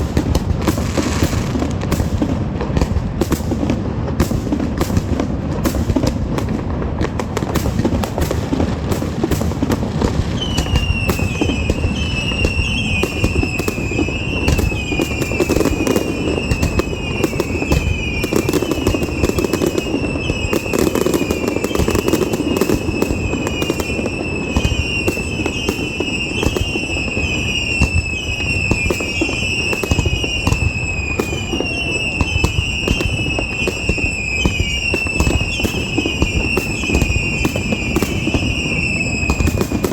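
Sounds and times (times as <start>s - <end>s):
fireworks crackling and booming: 0.0s - 39.9s
falling whistling tone: 10.4s - 39.9s.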